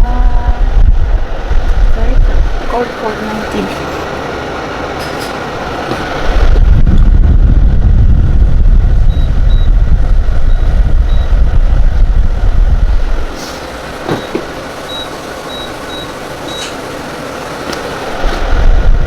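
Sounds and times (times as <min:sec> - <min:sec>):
air blowing on microphone: 0:00.0 - 0:19.0
air conditioner fan whirring: 0:00.0 - 0:19.0.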